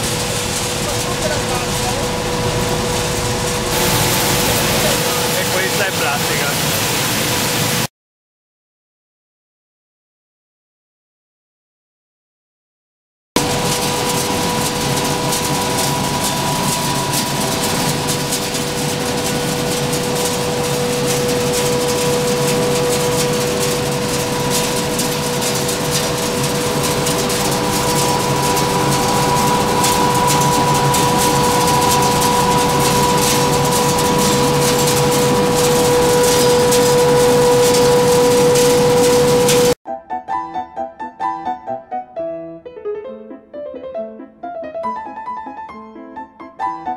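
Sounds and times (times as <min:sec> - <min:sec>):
machinery with constant whine: 0:00.0 - 0:07.9, 0:13.4 - 0:39.8.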